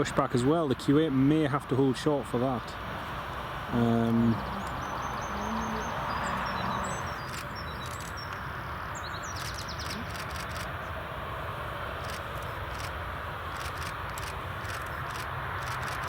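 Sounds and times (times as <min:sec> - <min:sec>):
distant jet engines: 0:00.0 - 0:16.0
small birds chirping: 0:03.7 - 0:11.0.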